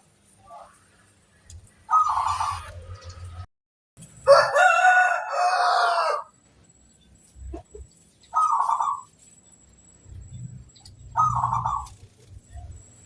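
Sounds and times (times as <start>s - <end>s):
doves cooing: 1.9s - 2.8s, 7.5s - 9.1s, 11.0s - 12.9s
rooster crowing: 4.2s - 6.4s.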